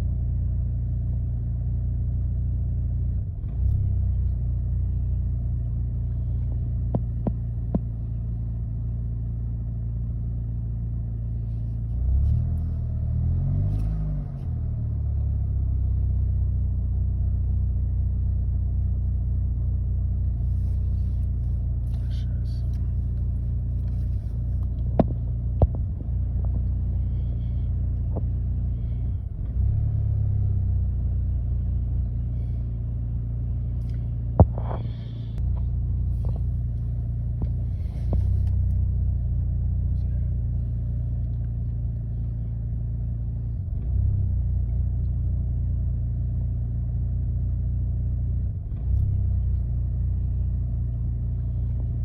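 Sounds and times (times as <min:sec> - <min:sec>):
car engine rough idle: 0:00.0 - 0:52.0.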